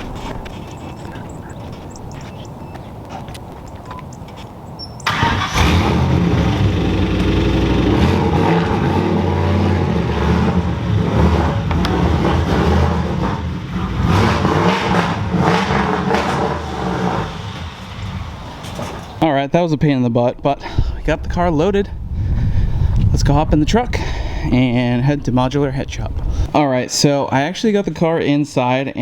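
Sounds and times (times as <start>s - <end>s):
car engine starting and revving: 5.0s - 19.2s.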